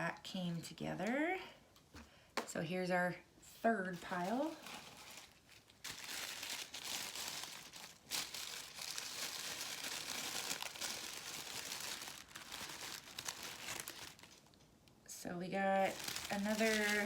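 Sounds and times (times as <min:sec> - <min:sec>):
tissue paper crinkling: 0:04.0 - 0:14.6, 0:15.7 - 0:17.0.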